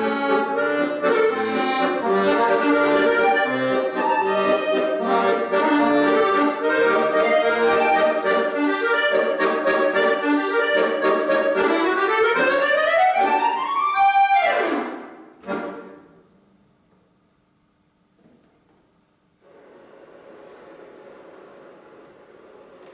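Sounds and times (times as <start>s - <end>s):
accordion playing fast: 0.0s - 16.0s.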